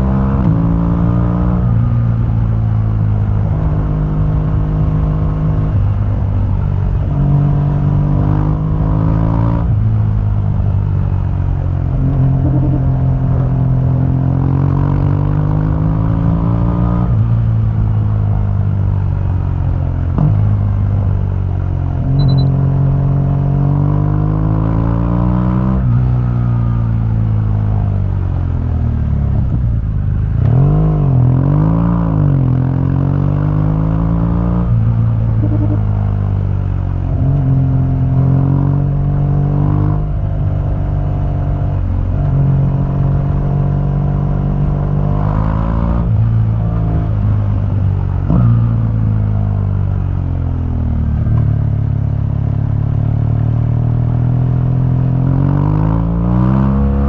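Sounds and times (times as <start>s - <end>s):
motorcycle engine accelerating: 22.1s - 26.1s, 30.4s - 49.7s.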